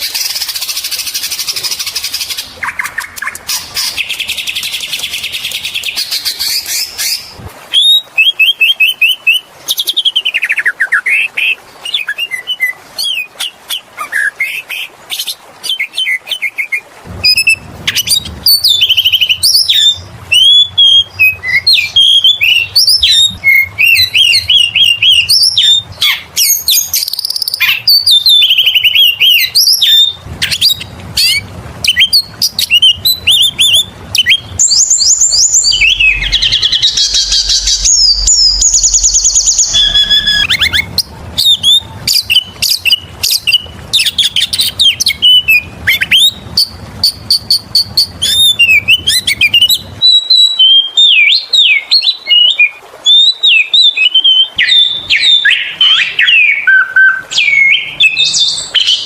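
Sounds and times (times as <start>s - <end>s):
bird singing whistles and chirps: 15.2s - 59.0s
bird buzzy trill: 32.3s - 44.1s.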